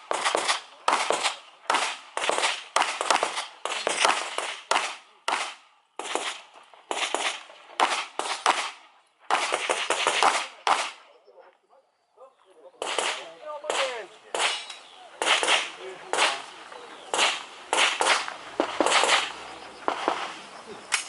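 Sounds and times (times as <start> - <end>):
handgun shots with echo: 12.8 - 16.4, 17.1 - 20.3.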